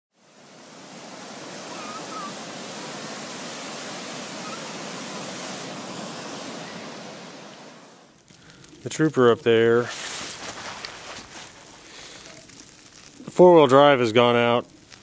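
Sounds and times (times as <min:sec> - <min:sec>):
steady rushing noise: 0:00.1 - 0:08.2.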